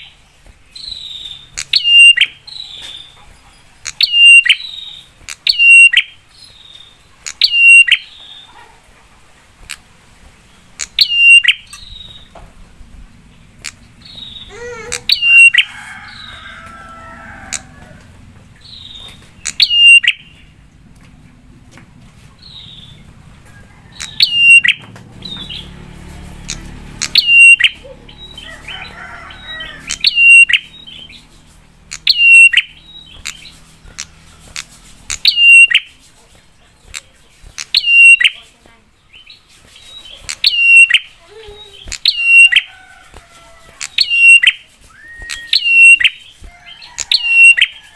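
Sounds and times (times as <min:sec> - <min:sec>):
bird twittering: 0:00.0 - 0:08.7, 0:10.5 - 0:12.4, 0:13.3 - 0:17.9, 0:18.6 - 0:20.6, 0:22.4 - 0:23.2, 0:23.9 - 0:25.8, 0:26.4 - 0:36.0, 0:36.8 - 0:38.4, 0:39.1 - 0:42.7, 0:43.8 - 0:47.8.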